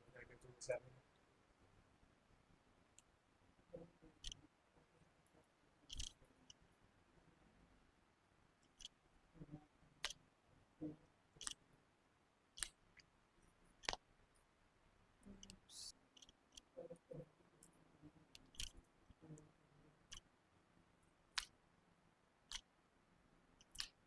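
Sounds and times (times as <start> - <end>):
faint sharp clicks: 2.9 - 3.1, 4.2 - 4.5, 5.9 - 6.6, 8.6 - 9.0, 10.0 - 10.2, 11.4 - 11.6, 12.6 - 14.5, 17.6 - 19.5, 20.1 - 20.3, 21.3 - 21.6, 22.5 - 22.7, 23.6 - 24.0.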